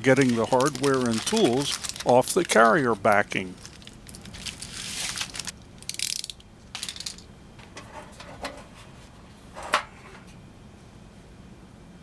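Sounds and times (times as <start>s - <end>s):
hardware clicking and rattling: 0.2s - 7.8s.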